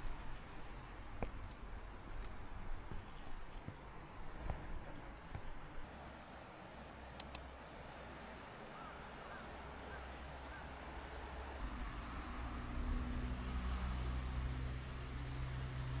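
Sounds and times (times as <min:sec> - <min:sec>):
sharp clicks: 0:07.2 - 0:07.4.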